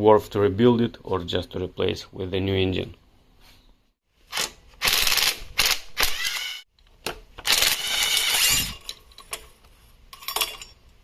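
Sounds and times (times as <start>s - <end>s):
metal tools clattering: 8.6s - 10.9s.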